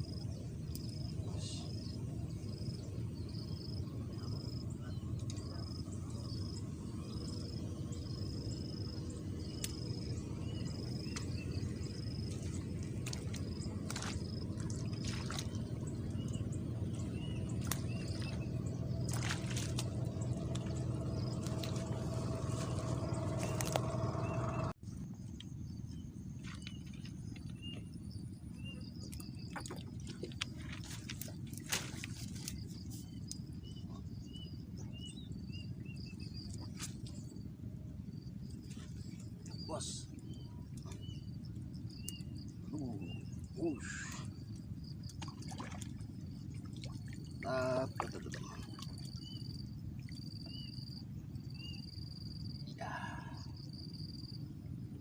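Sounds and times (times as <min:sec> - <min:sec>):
steady low rumble: 0:00.0 - 0:47.5
faint calls: 0:00.8 - 0:24.7, 0:38.7 - 0:50.8.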